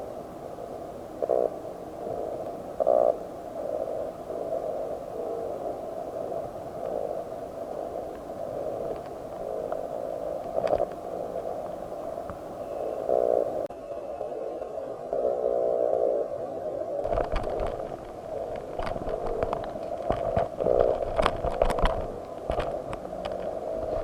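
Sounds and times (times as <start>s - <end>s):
muffled underwater churning water: 0.0s - 13.7s
faint clicks: 6.1s - 13.7s.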